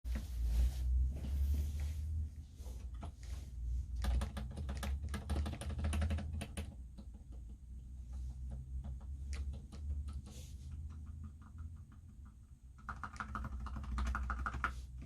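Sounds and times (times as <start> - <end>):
typing on mechanical keyboard: 3.9 - 7.7, 8.4 - 15.0.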